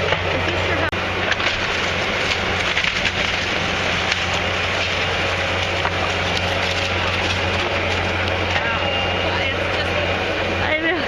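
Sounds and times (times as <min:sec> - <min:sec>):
low hum: 0:00.0 - 0:11.0
timber splintering and cracking: 0:01.2 - 0:08.5
wood snapping: 0:01.3 - 0:08.4.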